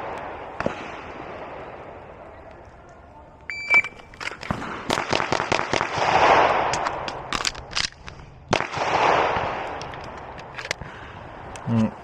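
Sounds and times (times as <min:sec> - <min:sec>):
reload clatter: 0:03.6 - 0:10.9
pistol shots: 0:03.7 - 0:07.3, 0:08.5 - 0:09.8.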